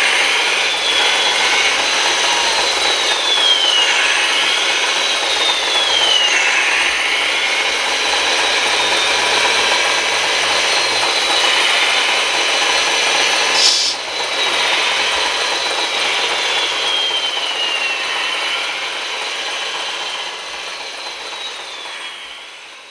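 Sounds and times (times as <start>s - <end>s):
electric gear whine: 0.0s - 22.9s
sharp click: 13.6s - 14.0s.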